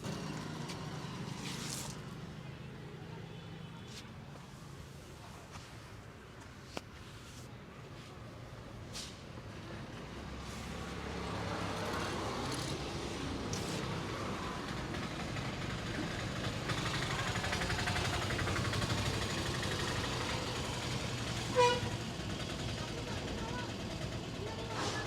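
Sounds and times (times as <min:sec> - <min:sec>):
vehicle engine running: 0:00.0 - 0:03.4, 0:09.8 - 0:25.0.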